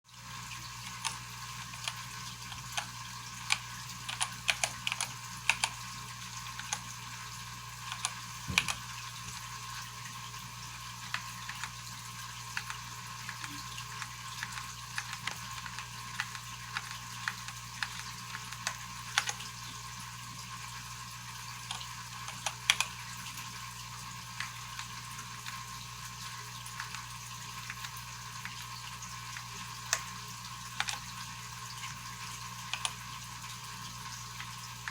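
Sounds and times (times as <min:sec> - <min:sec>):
steady hiss and low hum: 0:00.1 - 0:34.9
mechanical keyboard key clicks: 0:03.5 - 0:05.8, 0:07.9 - 0:08.8, 0:14.4 - 0:19.5, 0:21.7 - 0:22.9.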